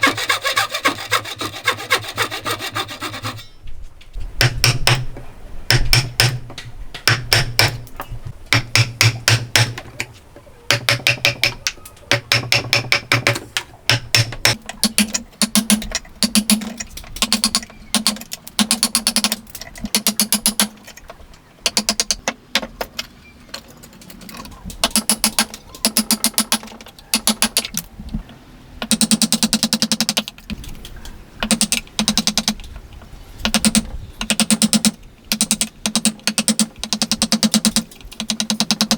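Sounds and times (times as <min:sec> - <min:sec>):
hand tool ticking on wood: 0:33.4 - 0:38.9.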